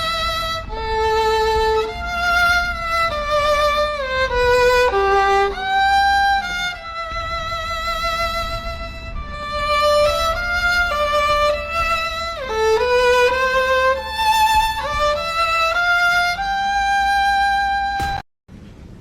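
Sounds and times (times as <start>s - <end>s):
solo violin slow melody: 0.0s - 18.2s.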